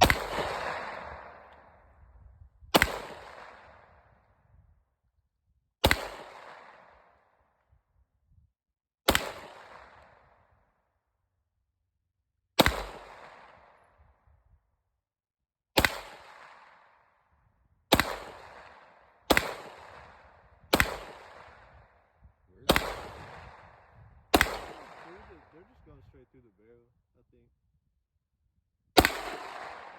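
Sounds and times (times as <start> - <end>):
gunshots with echo: 0.0 - 4.2, 5.8 - 7.2, 9.1 - 10.5, 12.6 - 14.1, 15.8 - 17.0, 17.9 - 26.1, 29.0 - 29.9.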